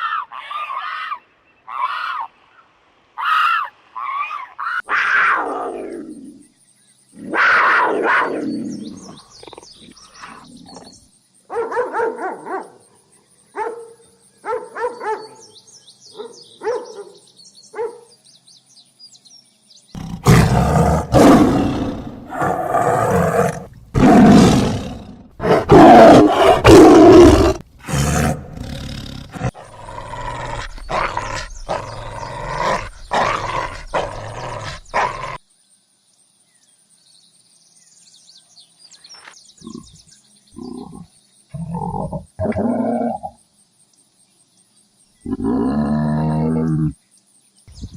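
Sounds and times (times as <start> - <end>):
big cat grunting calls: 20.0 - 35.4, 39.6 - 43.4, 45.2 - 47.0
big cat roaring: 20.0 - 35.4, 40.6 - 43.4, 45.2 - 47.0.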